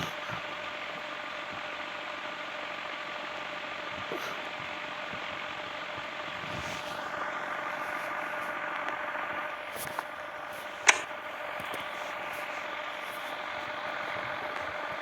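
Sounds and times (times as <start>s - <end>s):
ceiling fan humming: 0.0s - 15.0s
fan clicking: 8.1s - 15.0s.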